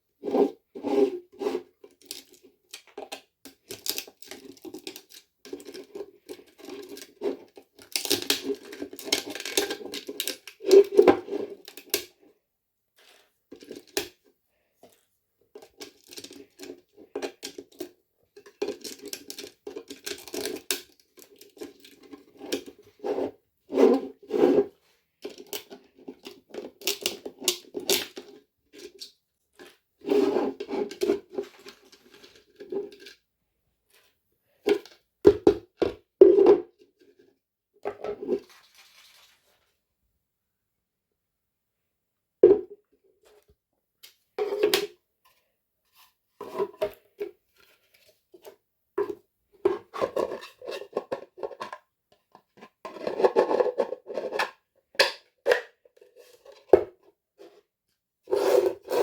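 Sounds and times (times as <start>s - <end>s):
scraping and rustling handling: 28.8s - 33.1s, 37.9s - 39.8s.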